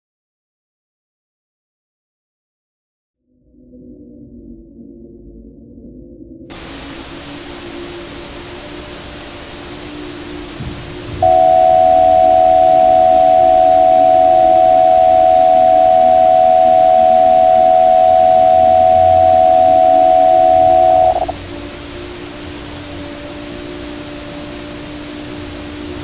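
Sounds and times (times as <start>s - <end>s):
low steady hum: 6.5s - 26.0s
two-tone attention signal: 7.6s - 26.0s.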